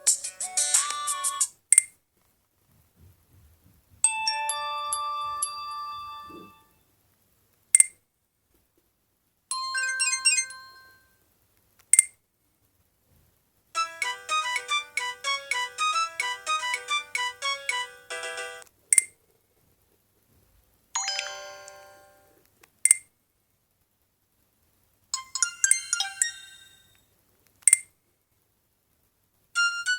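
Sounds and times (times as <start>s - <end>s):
mobile phone ringtone melodies: 0.0s - 1.5s, 4.0s - 6.6s, 9.5s - 11.0s, 13.8s - 18.6s, 21.0s - 22.4s, 25.2s - 27.0s, 29.6s - 29.9s.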